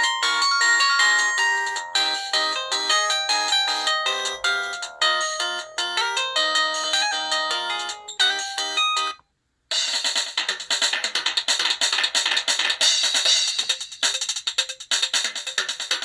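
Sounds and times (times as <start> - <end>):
electronic ringtone melody: 0.0 - 9.2
drum loop ringtone: 0.0 - 16.0.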